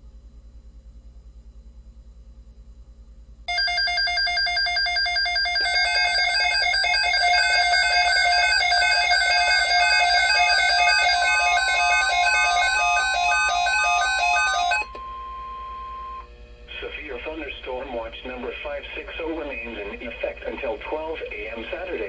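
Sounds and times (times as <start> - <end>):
two-note alarm beeping: 5.6 - 16.3.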